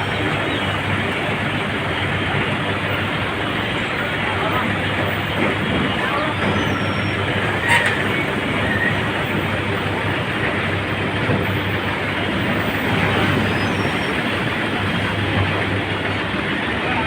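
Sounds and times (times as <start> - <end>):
tractor engine running: 0.0 - 17.0.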